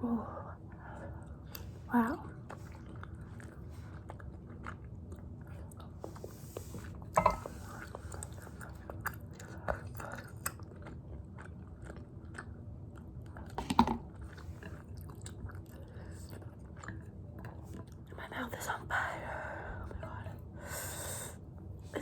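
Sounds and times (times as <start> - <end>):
close chewing: 1.5 - 13.6, 14.2 - 18.1.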